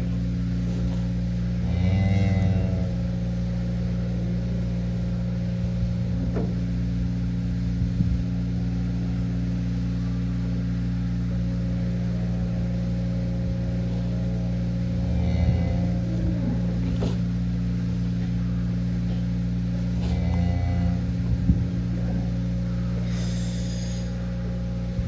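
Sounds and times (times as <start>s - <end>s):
machinery humming: 0.0s - 25.0s.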